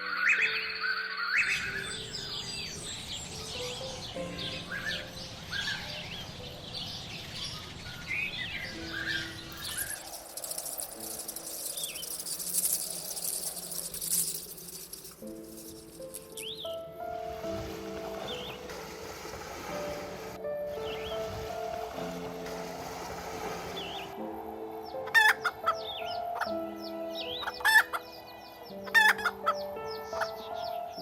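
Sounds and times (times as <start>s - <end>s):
small birds chirping: 0.0s - 16.8s.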